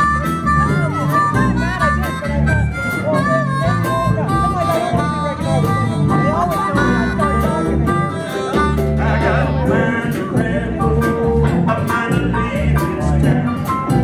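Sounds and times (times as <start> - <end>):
live country band music: 0.0 - 14.0
person singing: 7.2 - 14.0.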